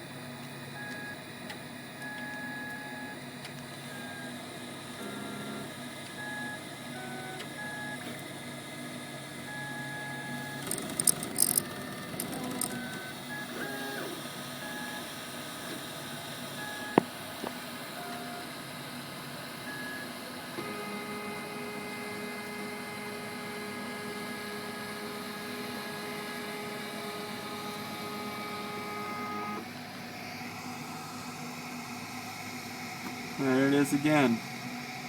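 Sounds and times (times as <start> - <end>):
stepper motors singing: 10.3 - 13.2
sharp crackling clicks: 10.6 - 12.8.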